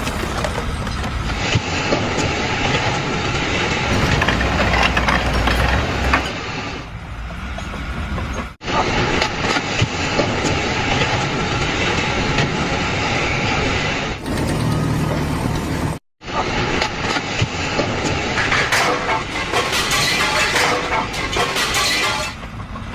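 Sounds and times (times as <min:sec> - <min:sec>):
mechanical clattering and rumbling: 0:00.0 - 0:02.3, 0:03.3 - 0:06.8.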